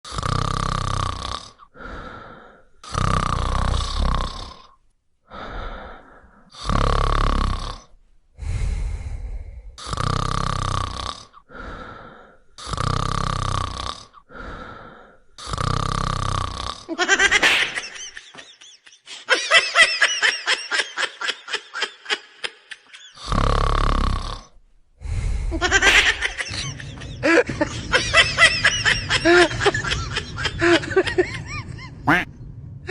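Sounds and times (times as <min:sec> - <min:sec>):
person snoring loudly: 0:00.0 - 0:02.1, 0:02.8 - 0:04.7, 0:05.3 - 0:11.4, 0:12.6 - 0:14.2, 0:15.4 - 0:16.9, 0:23.2 - 0:24.6, 0:32.1 - 0:32.3
quiet breaths: 0:01.0 - 0:16.9, 0:23.0 - 0:27.9
stuttering pitched pulses: 0:32.1 - 0:32.3.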